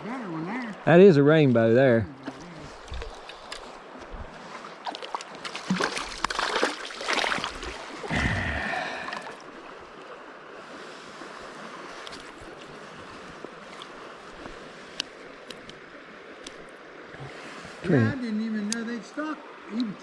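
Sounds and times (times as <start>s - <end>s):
stream running: 0.0s - 20.0s
splashing and knocking: 4.8s - 9.2s.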